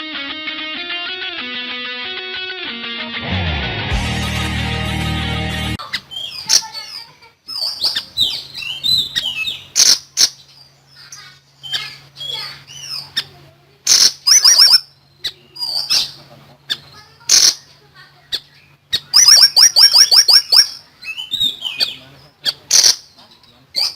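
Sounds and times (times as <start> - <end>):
songbird singing: 5.8 - 23.9.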